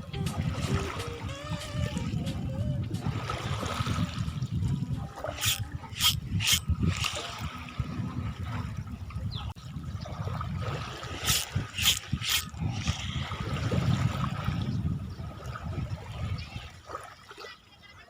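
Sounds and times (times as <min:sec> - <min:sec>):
water trickling and lapping: 0:00.0 - 0:18.0.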